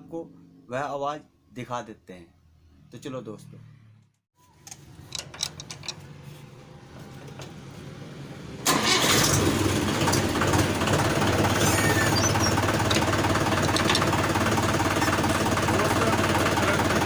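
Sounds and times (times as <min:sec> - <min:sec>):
clicks and rattles: 0:04.6 - 0:06.0, 0:12.4 - 0:14.3
tractor diesel engine running: 0:04.8 - 0:17.0.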